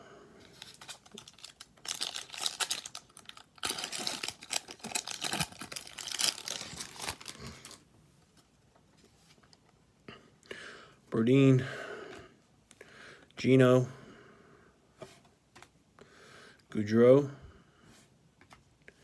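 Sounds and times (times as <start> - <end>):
foil wrapper crinkling and tearing: 0.5 - 7.8.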